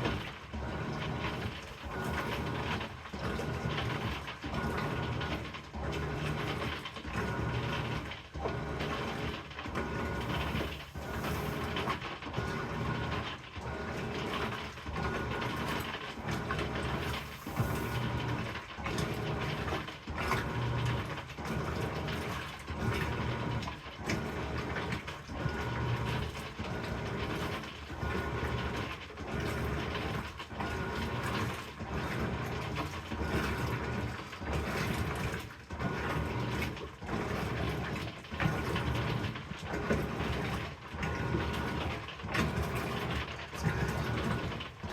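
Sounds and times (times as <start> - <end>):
washing machine agitating: 0.0 - 44.9.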